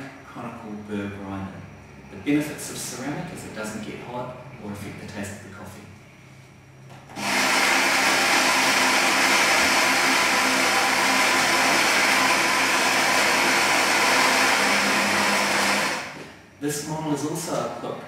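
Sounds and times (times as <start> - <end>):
coffee grinder grinding beans: 7.2 - 16.2.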